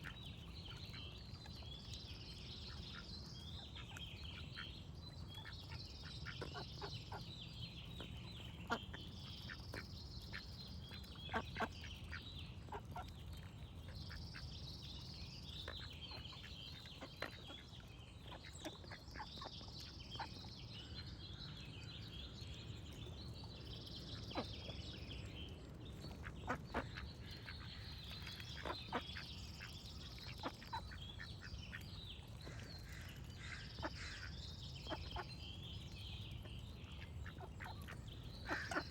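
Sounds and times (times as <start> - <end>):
songbirds chirping: 0.0 - 38.9
ducks quacking: 37.2 - 38.9.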